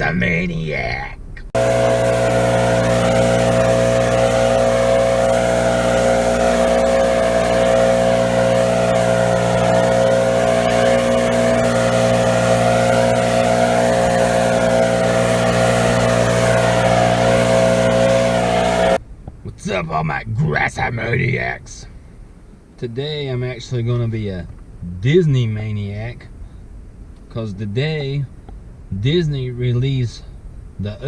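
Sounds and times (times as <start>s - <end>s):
lawn mower engine running: 1.6s - 19.0s
wavering whine: 1.6s - 19.0s.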